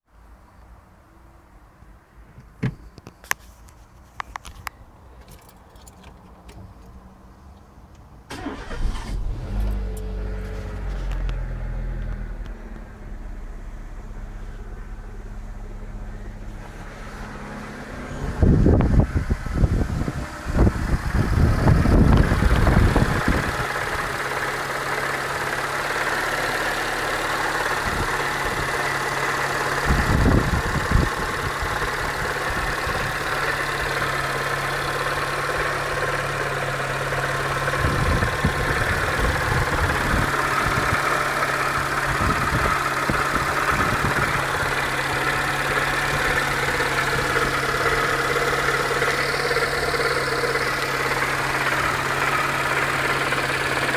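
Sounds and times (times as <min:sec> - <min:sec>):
car engine idling with a knock: 0:02.3 - 0:03.2
loud low rumble: 0:09.2 - 0:24.2.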